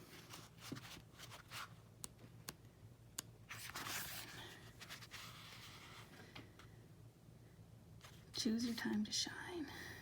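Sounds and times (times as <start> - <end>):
paper pages turning: 0.0 - 1.8, 3.5 - 6.1.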